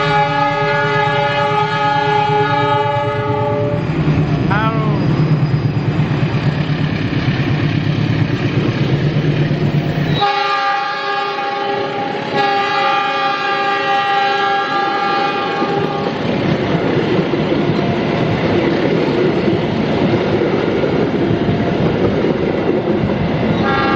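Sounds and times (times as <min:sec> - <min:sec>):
locomotive horn: 0:00.0 - 0:03.9, 0:10.1 - 0:16.2, 0:23.6 - 0:23.9
train rumbling past: 0:00.0 - 0:23.9.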